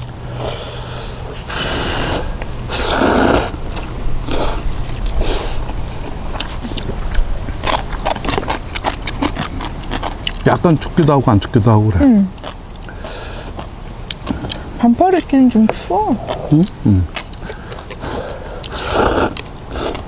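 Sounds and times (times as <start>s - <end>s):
people slurping noodles: 0.3s - 7.3s, 12.9s - 13.7s, 16.2s - 20.0s
small eating clicks and smacks: 2.4s - 20.0s.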